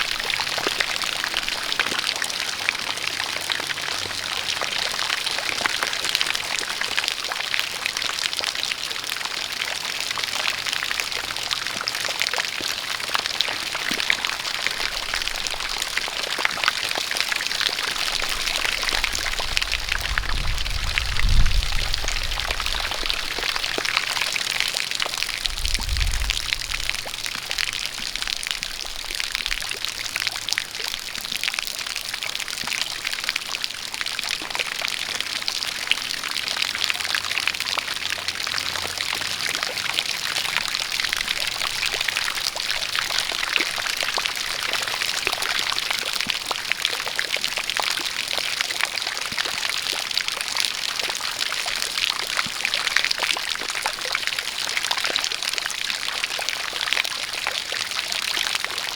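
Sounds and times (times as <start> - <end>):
steady rain falling: 0.0 - 58.9
water pouring from a spout: 0.0 - 58.9
low rumble: 19.0 - 23.8, 25.1 - 28.6.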